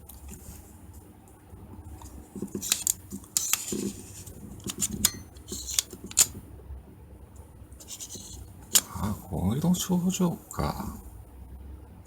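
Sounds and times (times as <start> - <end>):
metal parts clicking and clinking: 2.6 - 4.0
light scraping: 7.8 - 8.9.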